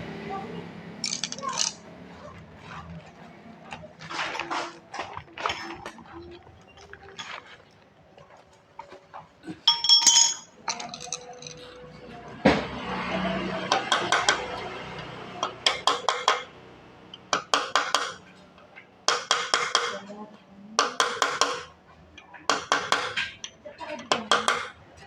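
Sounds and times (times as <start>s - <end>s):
metal tools clinking: 1.0s - 1.8s, 9.5s - 11.9s
ringing metallic clink: 9.7s - 11.8s.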